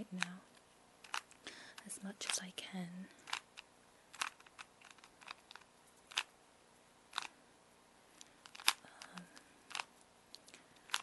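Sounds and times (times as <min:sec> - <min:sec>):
puzzle cube layers clicking: 0:01.0 - 0:02.5, 0:03.2 - 0:06.3, 0:07.1 - 0:07.3, 0:08.2 - 0:11.0.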